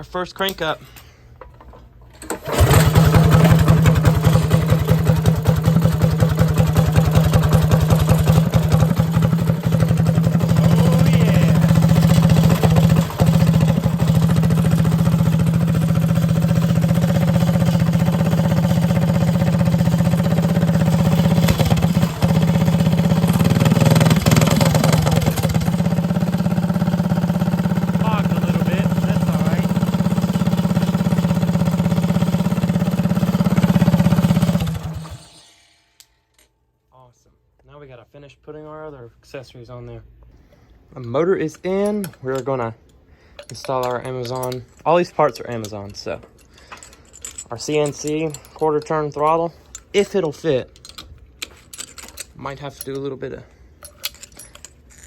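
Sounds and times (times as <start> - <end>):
small engine running: 2.3 - 35.8.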